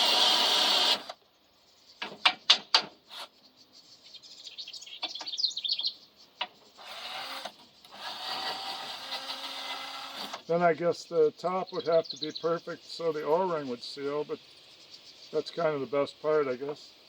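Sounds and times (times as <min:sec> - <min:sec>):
electric drill with wire brush: 0:00.0 - 0:01.2, 0:06.8 - 0:10.4
high chirping: 0:03.2 - 0:08.1, 0:10.4 - 0:17.0.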